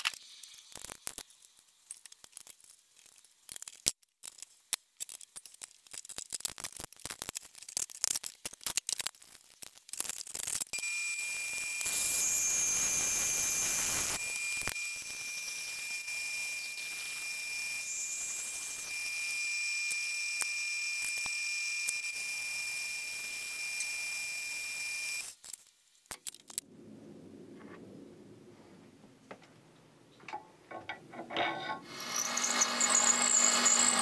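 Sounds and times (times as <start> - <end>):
machine tool whining: 10.8 - 25.3, 31.3 - 34.0
hiss: 11.5 - 25.4.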